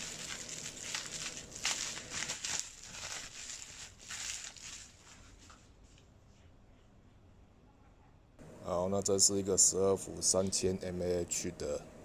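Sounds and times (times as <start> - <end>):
hands rustling with battery pack: 0.0 - 6.1.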